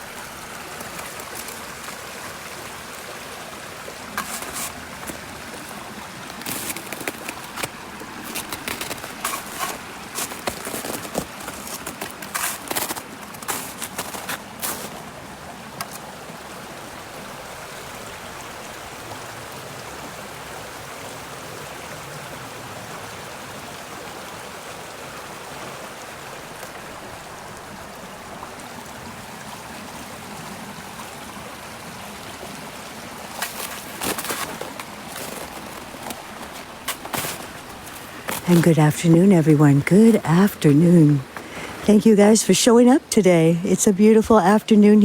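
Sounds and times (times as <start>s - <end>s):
footsteps crunching on trail: 4.2s - 15.0s, 33.3s - 41.9s.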